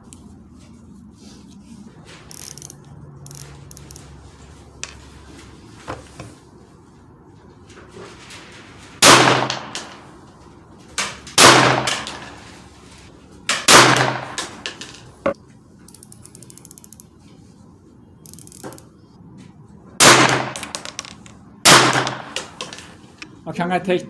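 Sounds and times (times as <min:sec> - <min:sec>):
small metallic clicks: 0:02.3 - 0:04.1, 0:15.9 - 0:17.1, 0:18.2 - 0:18.9
gunshots echoing: 0:09.0 - 0:09.9, 0:11.4 - 0:12.4, 0:13.6 - 0:14.6, 0:20.0 - 0:21.0, 0:21.7 - 0:22.6.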